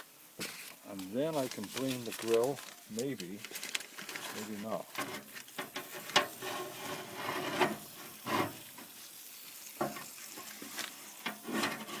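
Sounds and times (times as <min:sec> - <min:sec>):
metal grill parts scraping: 0:04.2 - 0:08.9, 0:11.2 - 0:12.0.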